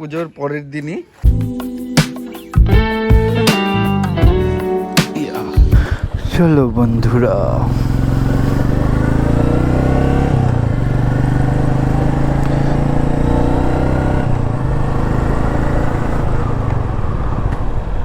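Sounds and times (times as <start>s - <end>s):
motorcycle engine accelerating: 5.6s - 18.0s.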